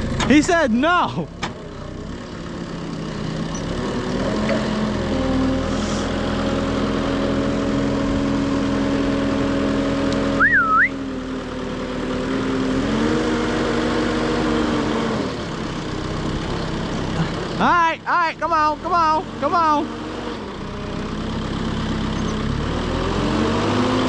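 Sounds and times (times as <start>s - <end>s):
diesel engine revving: 0.0s - 24.0s
short wavering whistle: 10.4s - 11.0s.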